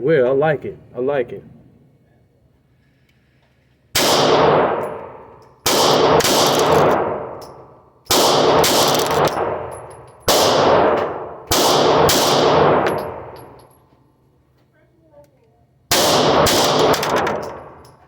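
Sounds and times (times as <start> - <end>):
pistol shots echoing: 4.0 - 7.4, 8.1 - 13.5, 15.9 - 17.8.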